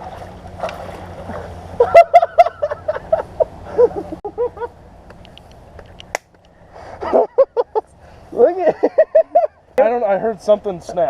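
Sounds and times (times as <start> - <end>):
man laughing: 1.8 - 4.7, 7.0 - 9.6.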